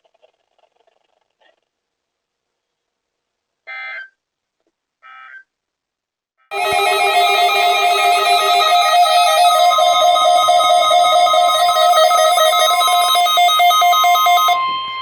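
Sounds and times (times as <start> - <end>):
guitar music: 6.5 - 14.6
electronic data-tone bursts: 6.5 - 14.7.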